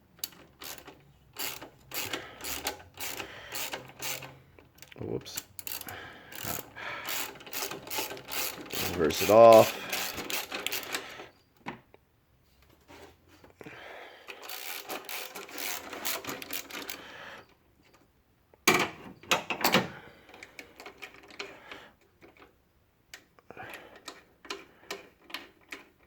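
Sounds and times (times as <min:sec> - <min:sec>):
hand ratchet clicking: 0:00.2 - 0:11.1, 0:14.3 - 0:17.0.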